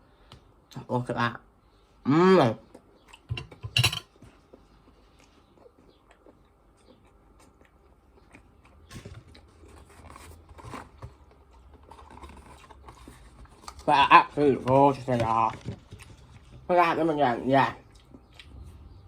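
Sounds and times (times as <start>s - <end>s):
person chewing crunchy food: 4.1s - 16.7s, 17.8s - 19.0s.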